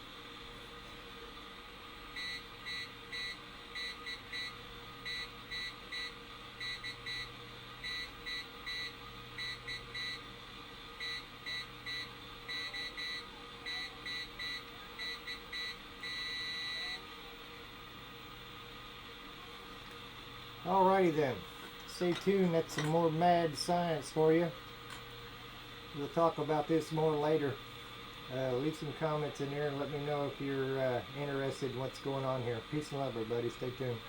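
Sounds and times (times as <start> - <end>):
morse code beeps: 2.2 - 4.5, 5.1 - 7.2, 7.9 - 10.2, 11.0 - 16.9
radio static hiss and hum: 16.4 - 34.0.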